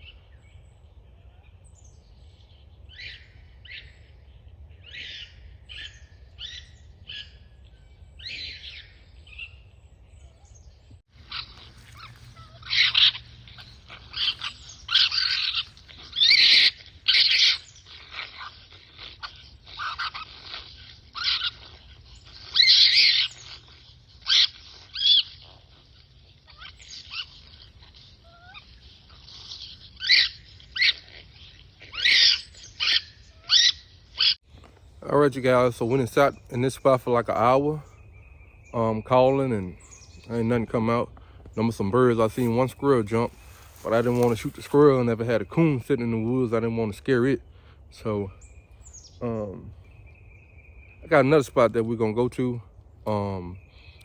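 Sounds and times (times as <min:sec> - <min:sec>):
electronic raccoon calls: 0:11.2 - 0:34.4.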